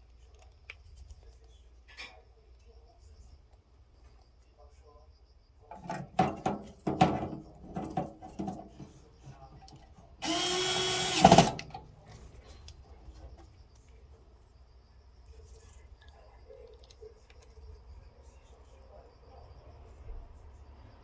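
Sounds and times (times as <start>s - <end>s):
parts clattering and knocking: 5.7s - 13.6s
handheld power tool spinning: 10.2s - 11.8s.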